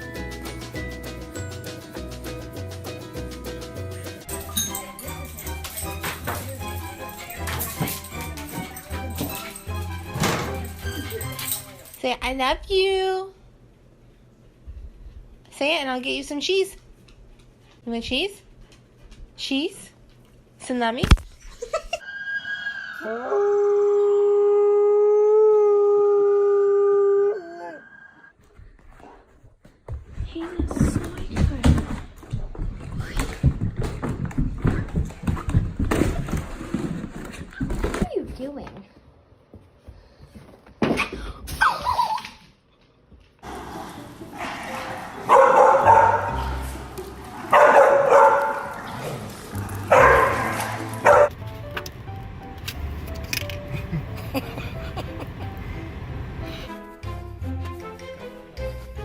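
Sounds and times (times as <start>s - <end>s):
dog howling: 22.2s - 28.0s
dog barking: 44.4s - 46.5s, 47.5s - 48.9s, 49.9s - 51.3s.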